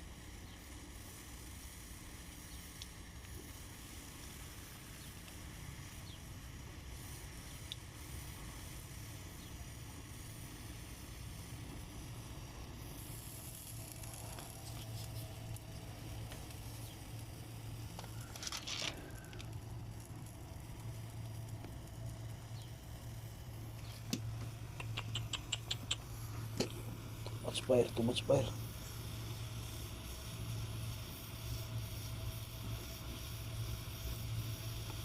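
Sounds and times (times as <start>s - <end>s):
torch flame burning: 0.0s - 35.0s
quick ticks: 24.1s - 26.8s.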